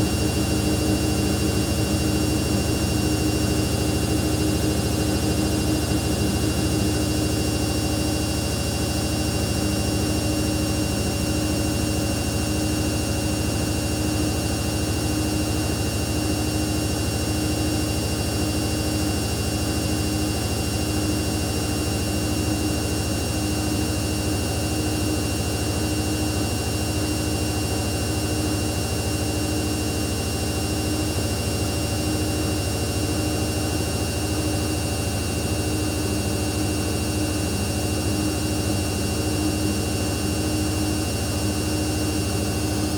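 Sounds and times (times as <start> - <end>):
washing machine humming: 0.0 - 11.3
steady whine: 0.0 - 16.2.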